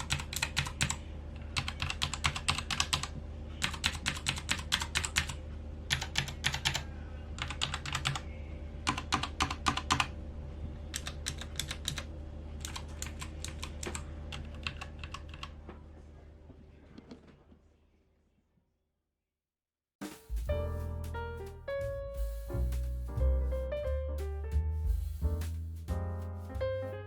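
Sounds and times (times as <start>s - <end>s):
mechanical keyboard typing: 0.0s - 6.8s, 7.4s - 8.2s, 8.8s - 10.1s, 10.9s - 15.6s
steady low hum: 20.2s - 27.0s.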